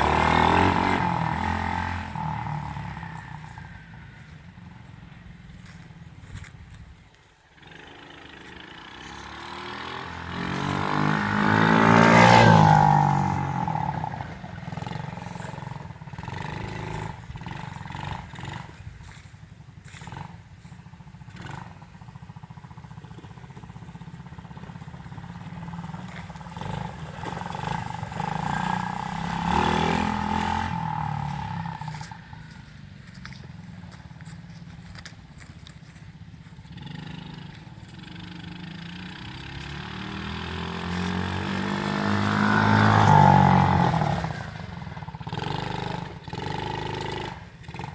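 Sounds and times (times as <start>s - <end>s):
atv engine running: 0.0s - 47.9s.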